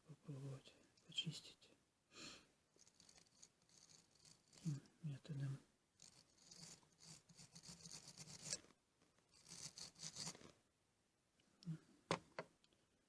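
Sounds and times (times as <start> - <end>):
wire brush scrubbing metal: 2.8 - 4.8, 6.0 - 8.6, 9.3 - 10.4.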